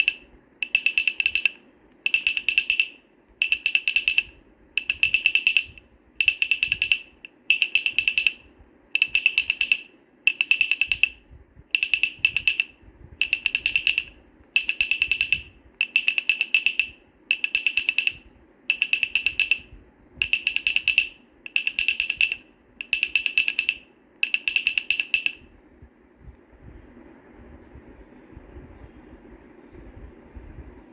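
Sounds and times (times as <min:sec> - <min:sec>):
wooden baby rattle clacking: 0:00.0 - 0:08.4, 0:09.0 - 0:11.1, 0:11.8 - 0:25.4.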